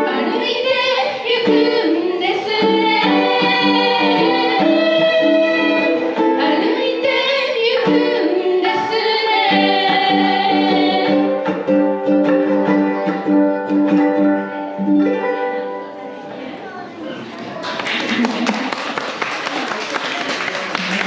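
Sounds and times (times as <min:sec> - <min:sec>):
group singing: 0:00.0 - 0:11.8
ukuleles strummed: 0:00.0 - 0:16.3, 0:17.9 - 0:18.8.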